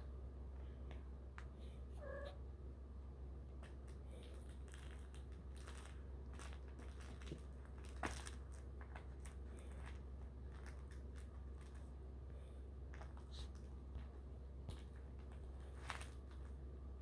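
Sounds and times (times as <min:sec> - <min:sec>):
steady low hum: 0:00.0 - 0:17.0
kittens scratching and clicking: 0:03.5 - 0:12.1, 0:12.8 - 0:16.6.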